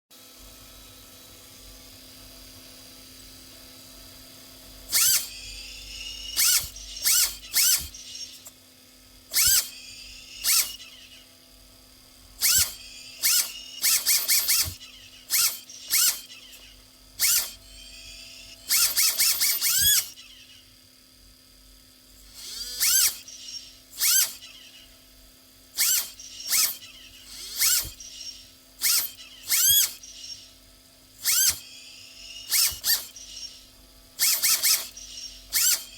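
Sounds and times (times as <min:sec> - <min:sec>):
rc car backfire bursts: 0:04.8 - 0:08.5, 0:09.2 - 0:11.3, 0:12.2 - 0:20.6, 0:22.1 - 0:25.0, 0:25.7 - 0:30.5, 0:31.1 - 0:35.9.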